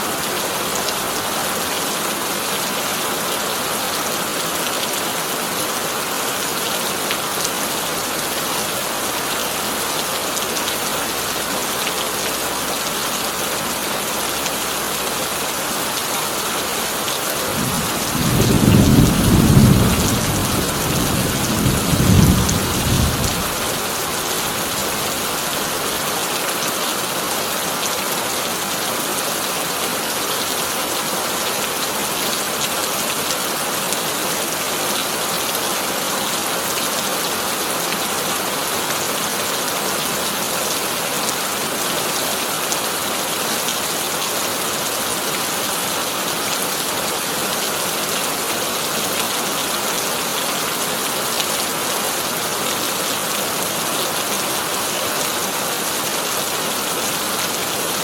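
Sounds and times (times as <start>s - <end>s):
heavy rain on a tin roof: 0.0s - 58.0s
thunder rumbling: 17.5s - 23.9s.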